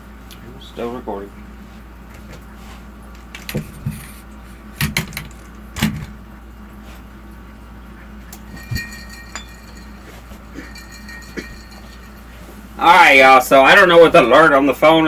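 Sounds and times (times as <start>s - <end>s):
knocks and clatters on a table: 3.3s - 4.2s, 4.8s - 6.2s.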